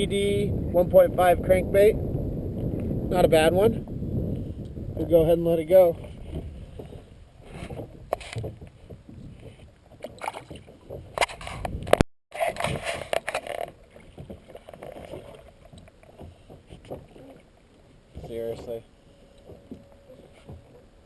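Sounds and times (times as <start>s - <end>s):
water splashing: 5.4s - 21.0s.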